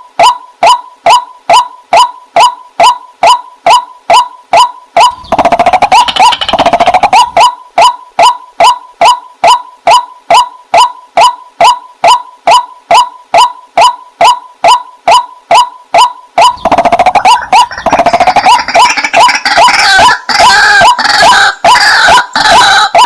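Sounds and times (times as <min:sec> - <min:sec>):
water hen calling: 0:16.4 - 0:23.0.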